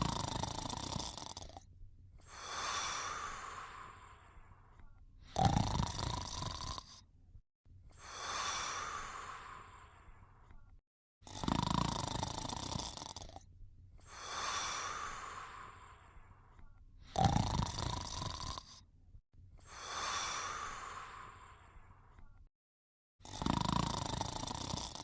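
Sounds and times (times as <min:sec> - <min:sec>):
cartoon snoring: 0:00.0 - 0:04.2, 0:05.2 - 0:07.1, 0:11.2 - 0:15.9, 0:17.0 - 0:18.9, 0:23.2 - 0:25.0.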